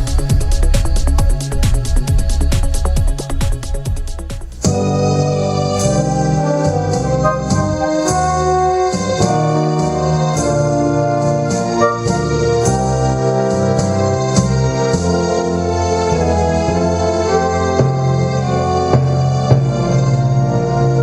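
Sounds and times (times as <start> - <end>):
organ-like keyboard chords: 4.3 - 21.0
light percussive accents: 7.0 - 8.7.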